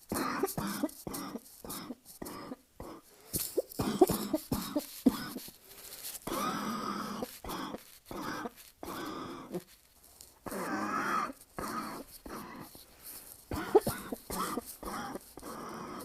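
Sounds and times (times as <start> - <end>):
person coughing harshly: 0.1 - 5.5, 6.3 - 6.8, 7.5 - 9.2, 13.5 - 15.6.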